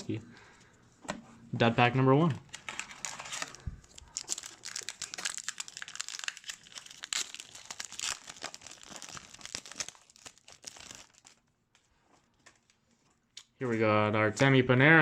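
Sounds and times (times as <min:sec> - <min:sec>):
wrapper crinkling and tearing: 0:02.6 - 0:11.5.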